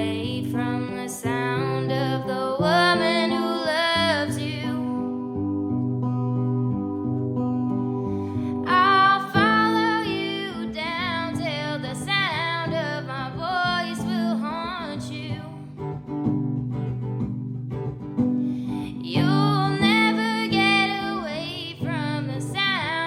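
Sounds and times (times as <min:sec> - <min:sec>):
person singing: 0:00.0 - 0:05.2, 0:18.8 - 0:23.0
acoustic guitar: 0:00.0 - 0:23.0.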